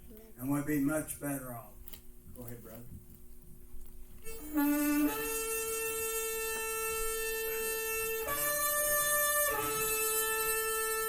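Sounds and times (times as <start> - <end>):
horn long held notes: 4.2 - 11.0.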